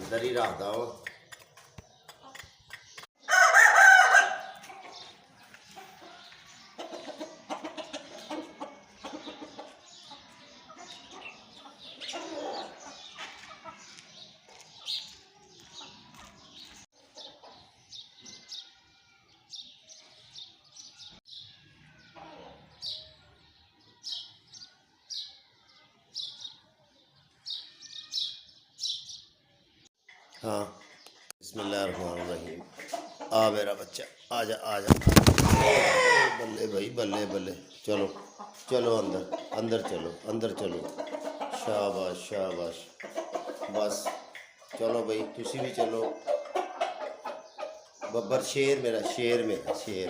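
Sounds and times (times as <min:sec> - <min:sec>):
chickens clucking: 0:00.0 - 0:18.4, 0:22.1 - 0:22.8, 0:30.0 - 0:50.0
rooster crowing: 0:03.2 - 0:04.6, 0:35.6 - 0:36.5.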